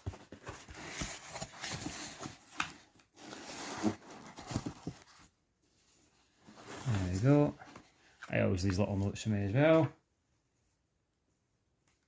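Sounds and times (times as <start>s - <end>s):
paper and plastic crinkling: 0.0s - 5.2s.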